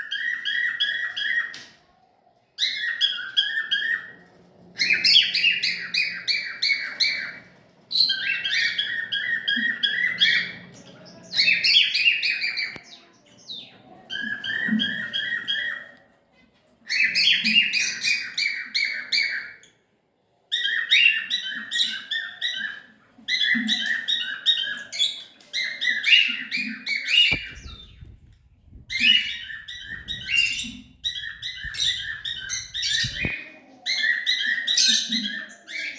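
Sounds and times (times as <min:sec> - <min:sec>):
cockatiel chirping: 0:04.8 - 0:07.4, 0:08.0 - 0:10.7, 0:20.5 - 0:35.9.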